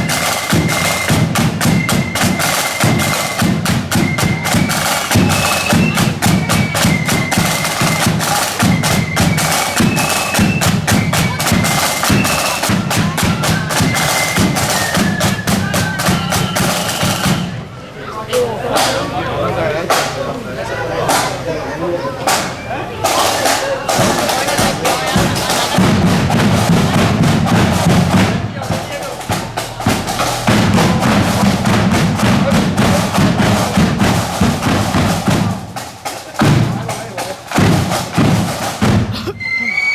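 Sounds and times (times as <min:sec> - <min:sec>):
rapid snare drumming: 0:00.0 - 0:17.6, 0:18.3 - 0:19.1, 0:19.9 - 0:20.3, 0:21.1 - 0:21.4, 0:22.2 - 0:39.2
flutes playing melody: 0:00.0 - 0:17.7, 0:39.4 - 0:39.9
bass drum beats: 0:22.3 - 0:39.3.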